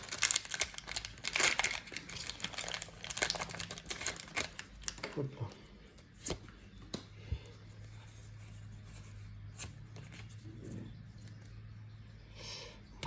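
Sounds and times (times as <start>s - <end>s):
sharp crinkles: 0.0s - 5.1s
foil wrapper rustling: 0.0s - 5.2s
low steady hum: 0.0s - 13.0s.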